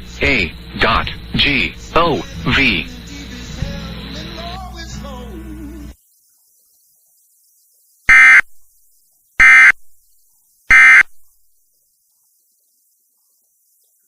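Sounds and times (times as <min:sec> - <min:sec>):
digital data tone bursts: 0:08.1 - 0:08.5, 0:09.4 - 0:09.8, 0:10.7 - 0:11.2.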